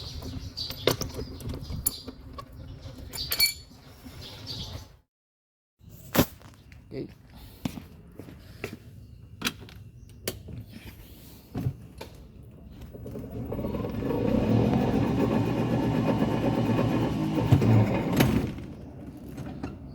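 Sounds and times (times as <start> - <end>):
golf cart driving: 12.6 - 19.9.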